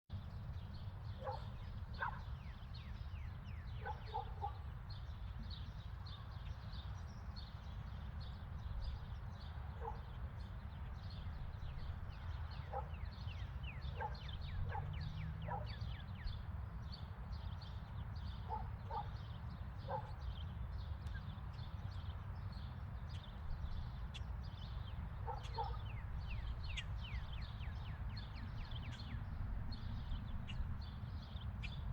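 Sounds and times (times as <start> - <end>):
small birds chirping: 0.2 - 31.9
dog barking: 1.2 - 2.3, 3.8 - 4.6, 9.8 - 10.1, 12.6 - 13.1, 13.9 - 15.8, 18.4 - 19.2, 19.8 - 20.2, 25.2 - 25.9.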